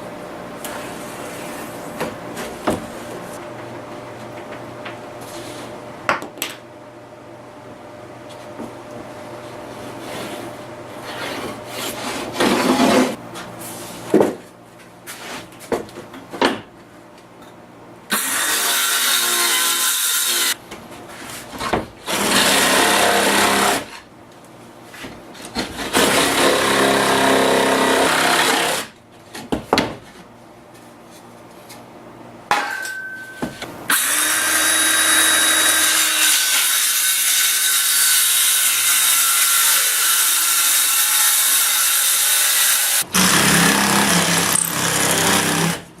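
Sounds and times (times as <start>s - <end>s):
power saw cutting plywood: 18.1s - 20.6s, 22.0s - 24.0s, 25.5s - 29.0s, 33.9s - 45.9s.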